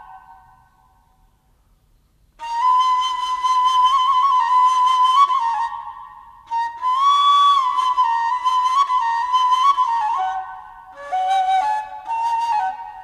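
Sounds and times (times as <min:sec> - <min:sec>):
solo flute long notes: 0:02.4 - 0:13.0.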